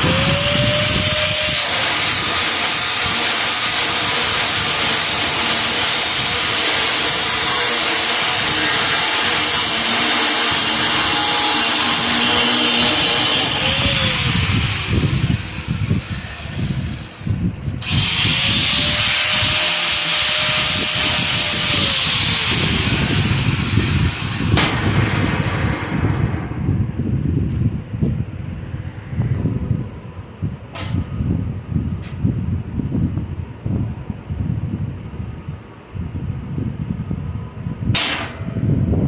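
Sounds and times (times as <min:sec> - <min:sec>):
power tool working on metal: 0:00.0 - 0:25.6.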